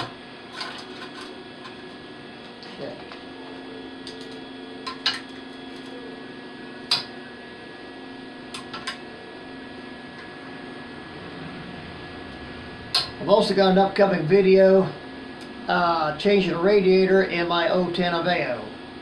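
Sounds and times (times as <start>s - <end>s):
low hum: 9.1s - 17.8s.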